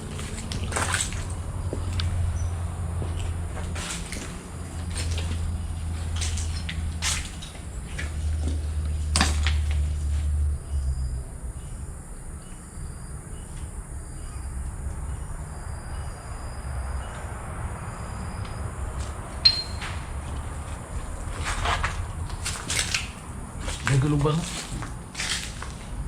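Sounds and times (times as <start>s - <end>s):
metallic clink: 19.4s - 19.9s.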